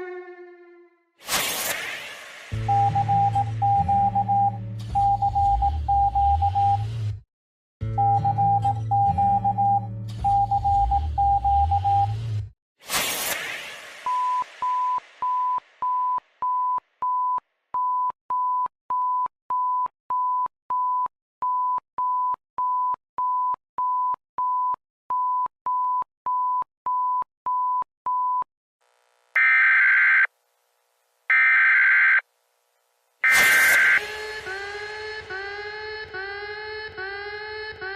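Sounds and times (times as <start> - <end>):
short high alert beeps: 33.2 - 34.1
harsh buzzer blasts: 33.2 - 35.3.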